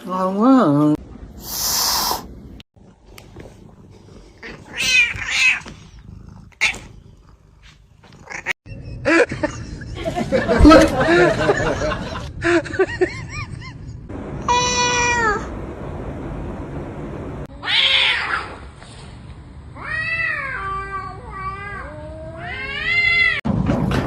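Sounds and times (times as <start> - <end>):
cats meowing: 4.4 - 6.9, 17.5 - 18.6, 19.8 - 23.4.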